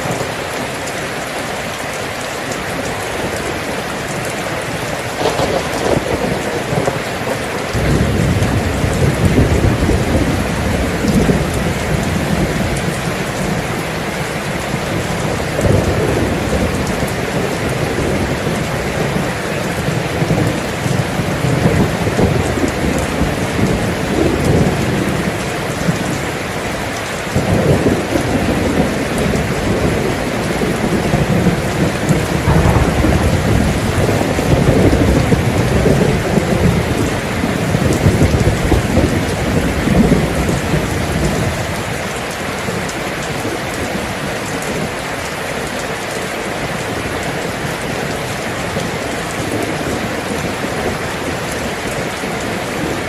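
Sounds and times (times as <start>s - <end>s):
steady rain: 0.0s - 53.0s
low rolling thunder: 2.9s - 44.9s.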